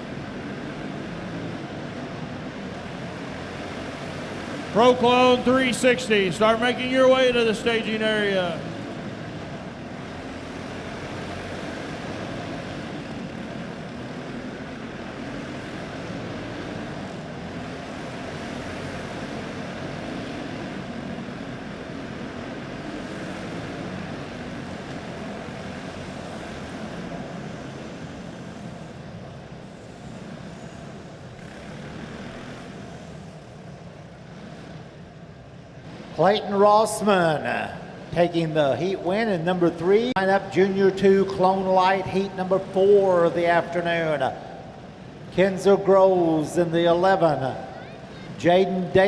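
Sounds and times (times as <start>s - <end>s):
racing kart engines droning: 0.0s - 49.0s.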